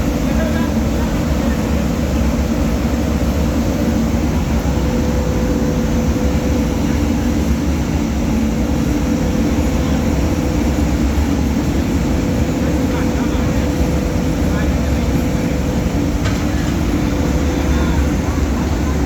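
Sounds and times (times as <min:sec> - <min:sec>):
roller mill droning: 0:00.0 - 0:19.0.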